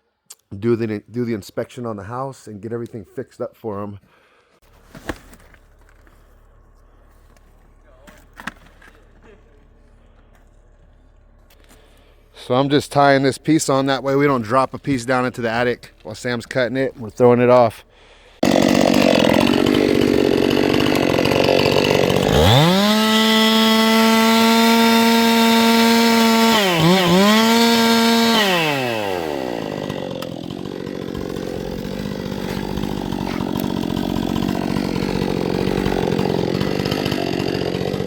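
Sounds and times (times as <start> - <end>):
chainsaw revving: 18.4 - 38.0.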